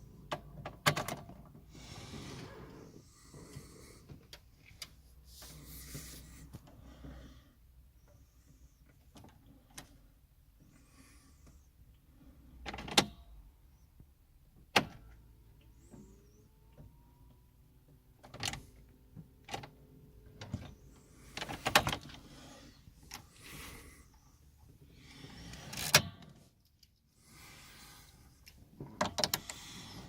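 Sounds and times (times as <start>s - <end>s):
car ignition clicks and rattles: 0.1s - 1.6s, 12.6s - 13.4s, 18.1s - 18.6s, 19.3s - 20.8s, 21.4s - 22.2s, 25.6s - 27.0s, 28.4s - 29.6s.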